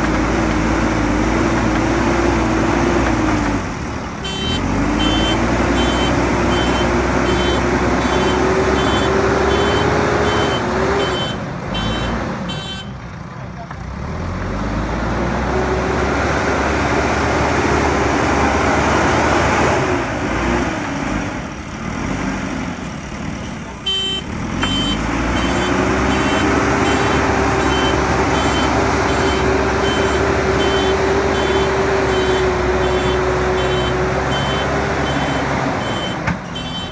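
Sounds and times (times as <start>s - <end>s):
diesel engine revving: 0.0s - 36.9s
reversing alarm beeps: 4.3s - 12.7s, 24.6s - 36.9s.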